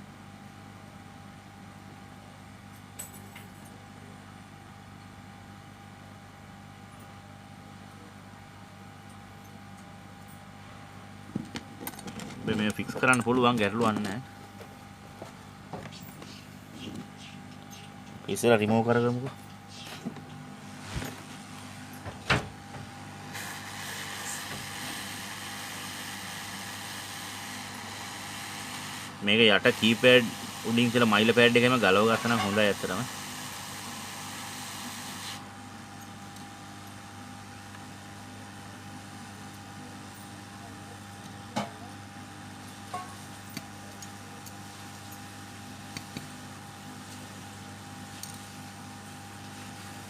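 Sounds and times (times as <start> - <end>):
hot-air blower humming: 10.5 - 50.0
hot air station hissing: 21.7 - 35.5.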